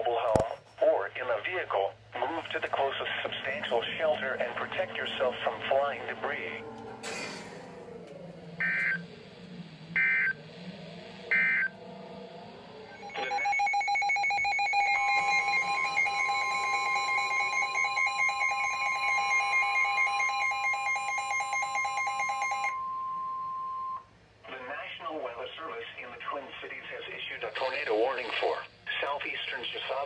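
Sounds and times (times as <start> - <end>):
pulsing weather radio alarm: 2.2 - 24.1
steady warning alarm tone: 2.2 - 24.2
digital data tone bursts: 13.0 - 22.9.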